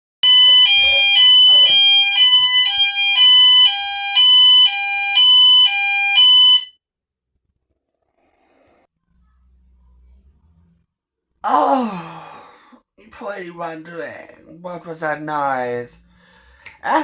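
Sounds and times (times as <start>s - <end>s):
fire alarm two-tone warning: 0.2s - 6.8s.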